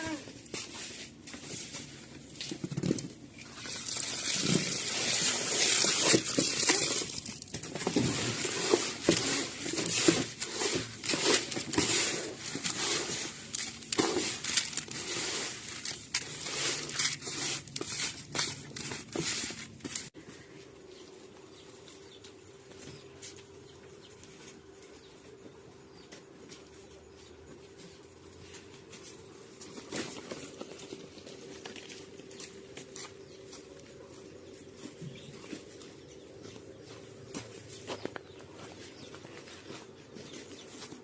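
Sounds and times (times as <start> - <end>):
plastic packaging crinkling: 0.5 - 20.1.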